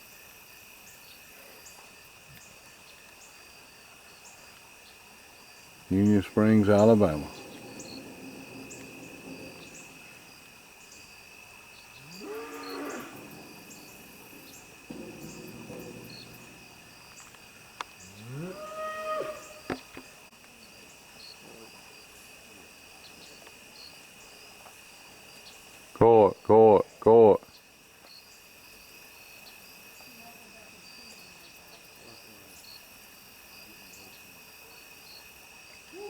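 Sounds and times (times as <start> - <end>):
crickets chirping: 0.0 - 36.0
cattle mooing: 6.8 - 10.4, 12.0 - 17.0, 18.1 - 19.7.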